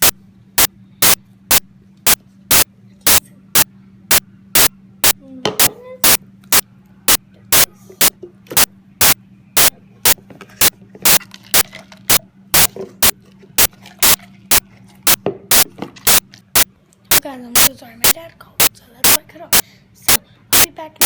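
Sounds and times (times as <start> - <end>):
electronic clicks: 0.0 - 13.1, 14.0 - 17.7
steady low hum: 0.0 - 21.0.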